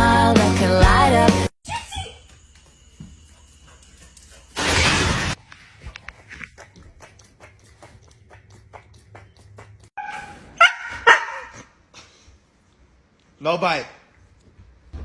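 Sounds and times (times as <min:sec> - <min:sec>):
dog barking: 0:10.0 - 0:11.7.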